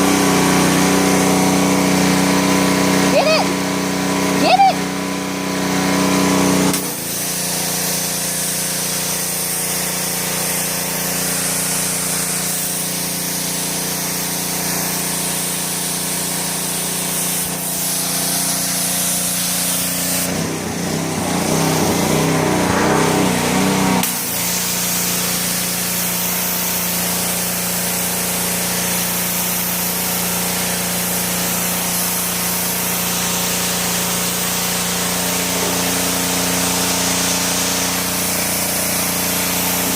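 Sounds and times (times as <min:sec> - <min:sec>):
pressure washer motor humming: 0:00.0 - 0:39.9
water spray hiss: 0:06.3 - 0:20.4, 0:21.2 - 0:39.9
rough low sound: 0:20.3 - 0:24.2.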